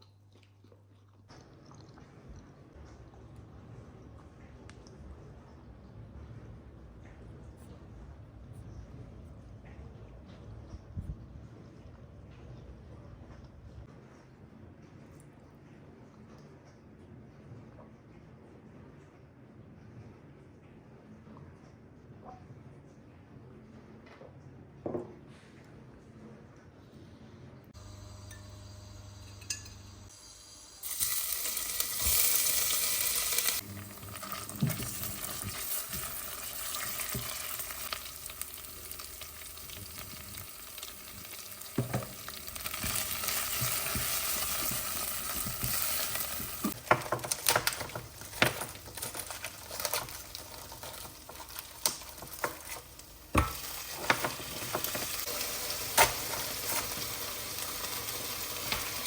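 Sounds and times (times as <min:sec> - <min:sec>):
food sizzling in a pan: 0:27.9 - 0:59.0.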